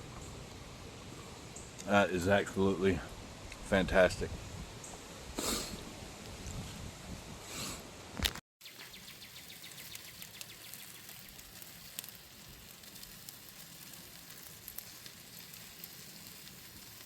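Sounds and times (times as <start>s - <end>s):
meat sizzling with crackles: 8.6s - 17.0s.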